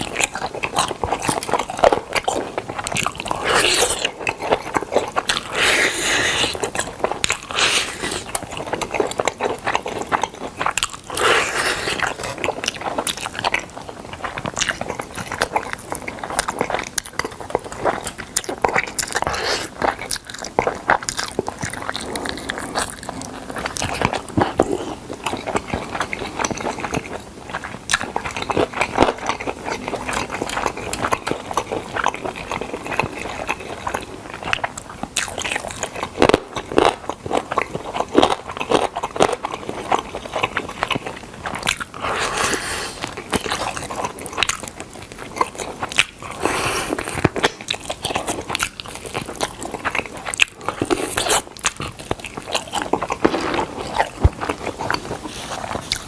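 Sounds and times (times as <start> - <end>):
biting and chewing: 0.0 - 56.0.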